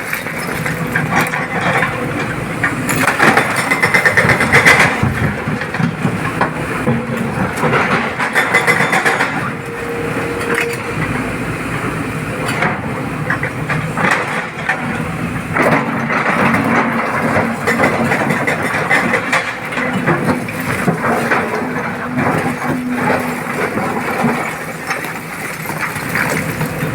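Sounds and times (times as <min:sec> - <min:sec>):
excavator diesel engine under load: 0:00.0 - 0:26.9.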